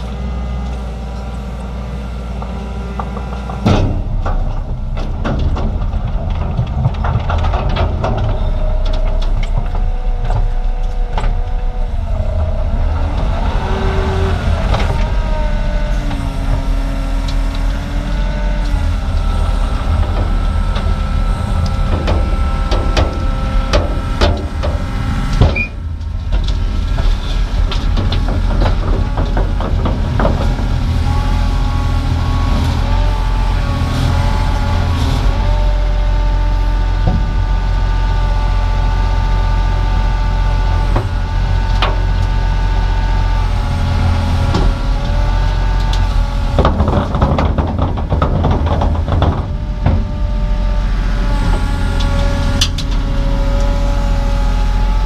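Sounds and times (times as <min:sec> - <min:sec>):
diesel engine under load: 0:00.0 - 0:55.0
metal knocks and clanks: 0:03.0 - 0:32.7, 0:44.2 - 0:54.0
hydraulic whines: 0:07.4 - 0:55.0.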